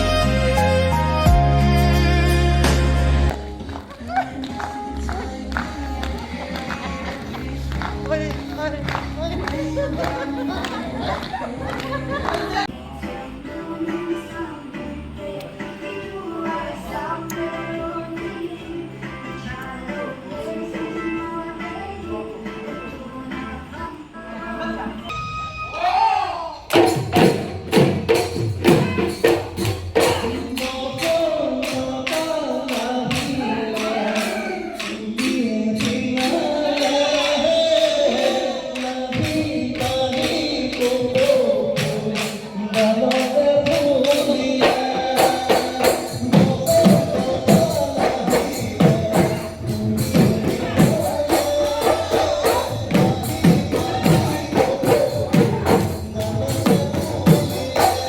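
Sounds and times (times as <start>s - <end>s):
person singing: 0.0s - 27.2s, 28.6s - 58.0s
tambourine beat: 26.7s - 58.0s.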